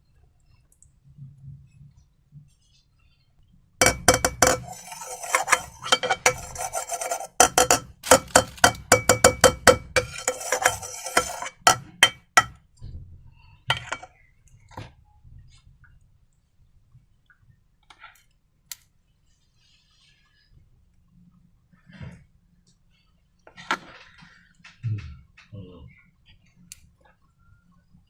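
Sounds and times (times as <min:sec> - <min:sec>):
rasping scrapes in container: 0:03.8 - 0:12.5, 0:13.7 - 0:14.1.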